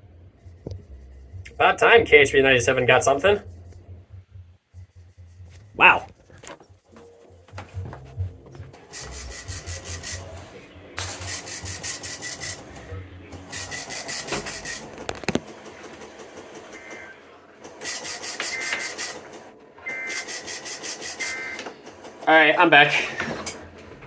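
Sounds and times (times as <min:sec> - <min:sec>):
radio rasping static: 0:01.5 - 0:24.0.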